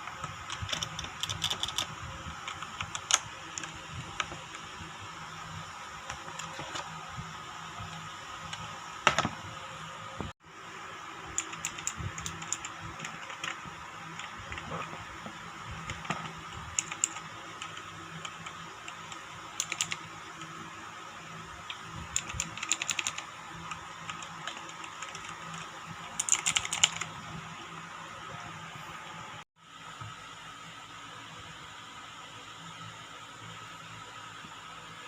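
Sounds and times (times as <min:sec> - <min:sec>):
mechanical keyboard typing: 0:00.1 - 0:04.7, 0:06.1 - 0:06.9, 0:11.3 - 0:13.6, 0:15.8 - 0:20.5, 0:21.7 - 0:27.1.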